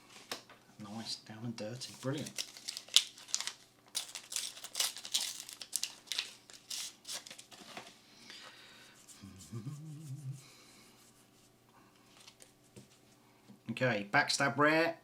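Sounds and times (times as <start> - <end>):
foil wrapper tearing and crinkling: 1.8 - 7.6.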